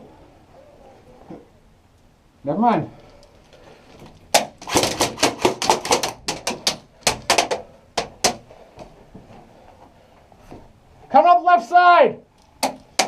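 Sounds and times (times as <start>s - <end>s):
airsoft guns firing: 4.3s - 8.4s.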